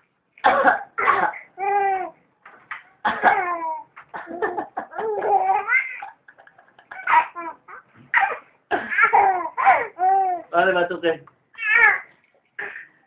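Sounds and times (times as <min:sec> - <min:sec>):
child pretend coughing: 0:00.5 - 0:01.5
baby laughing: 0:01.0 - 0:02.2, 0:03.1 - 0:10.5.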